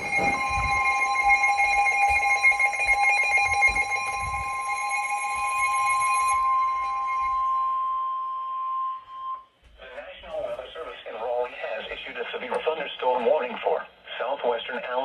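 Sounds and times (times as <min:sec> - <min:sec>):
high-pitched alert tone: 0:00.0 - 0:09.4
steady tones: 0:00.0 - 0:13.0.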